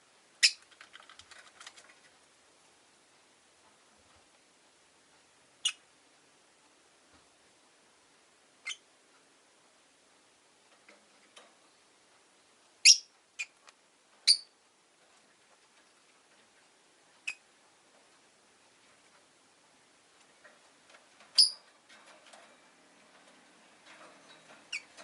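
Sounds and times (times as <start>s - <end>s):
lovebirds high-pitched chirps: 0.4s - 0.7s, 5.6s - 5.8s, 8.6s - 8.8s, 12.8s - 13.6s, 14.2s - 14.5s, 17.2s - 17.5s, 21.4s - 21.7s, 24.3s - 25.0s.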